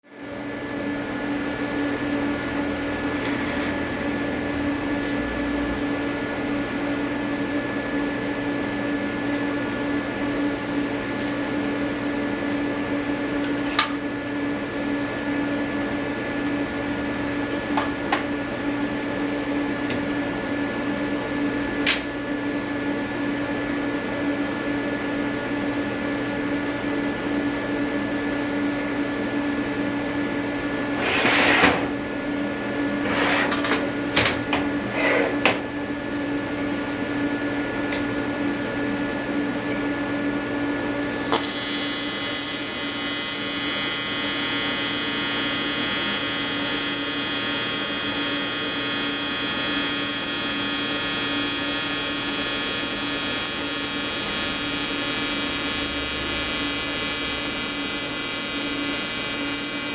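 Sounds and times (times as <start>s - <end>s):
welding arc buzzing: 0.5s - 13.5s, 41.0s - 59.9s.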